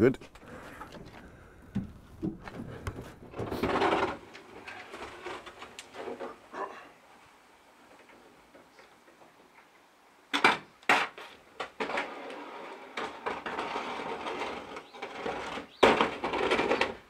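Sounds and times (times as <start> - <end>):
scraping sliding noise: 2.4 - 6.6, 11.2 - 17.0.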